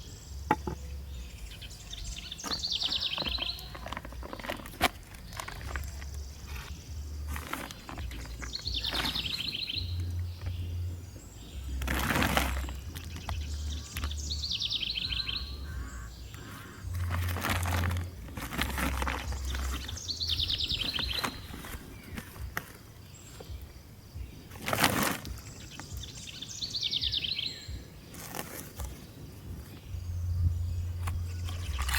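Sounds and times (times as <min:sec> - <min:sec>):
bird calling: 0:00.0 - 0:31.9
low pulsing hum: 0:05.2 - 0:22.5, 0:29.8 - 0:31.9.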